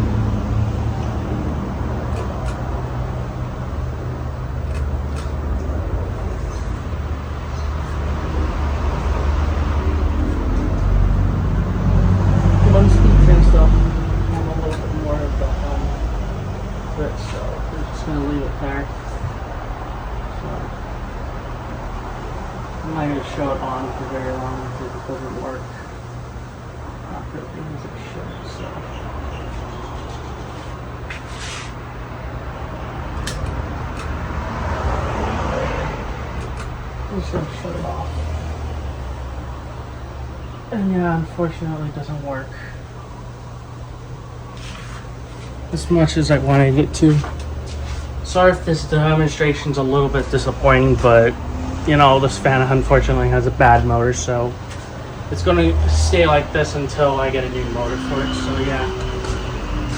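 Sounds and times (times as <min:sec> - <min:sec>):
ceiling fan motor hum: 0:00.0 - 0:31.1.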